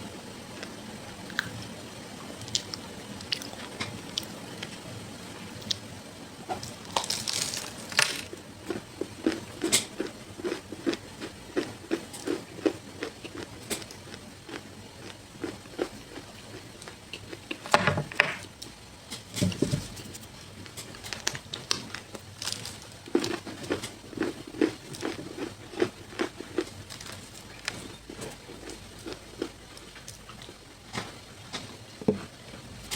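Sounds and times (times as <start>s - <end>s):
crackly chewing: 0.5s - 1.8s, 2.4s - 4.8s, 6.5s - 17.8s, 18.5s - 32.9s
crunchy bites: 6.6s - 16.6s, 21.1s - 30.1s.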